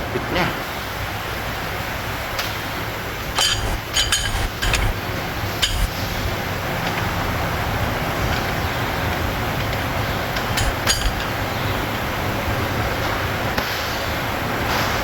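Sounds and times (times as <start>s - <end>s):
steady rushing noise: 3.0s - 6.8s, 10.6s - 11.5s
metal tools clinking: 3.3s - 5.0s, 5.6s - 6.0s, 10.6s - 11.6s.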